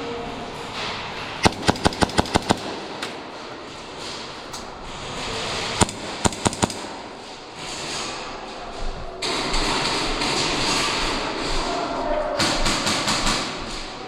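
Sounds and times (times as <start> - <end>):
airsoft gun firing: 1.4 - 3.5, 5.8 - 7.4.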